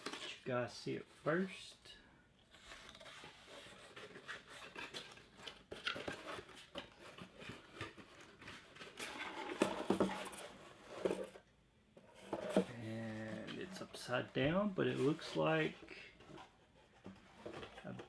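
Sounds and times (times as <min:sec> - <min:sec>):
packaging rustling and clicks: 0:02.6 - 0:11.4.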